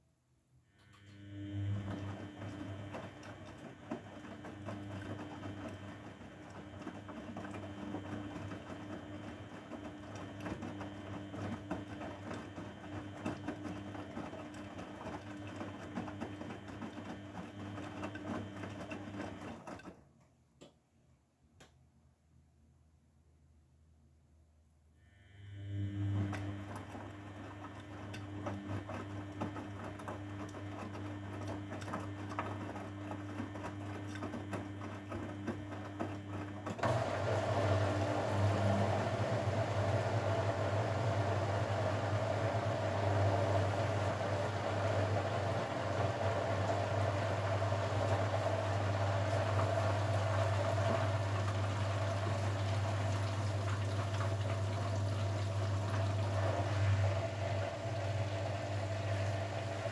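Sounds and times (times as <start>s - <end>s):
washing machine humming: 0.6s - 20.2s, 25.0s - 59.9s
water rushing: 36.8s - 59.9s.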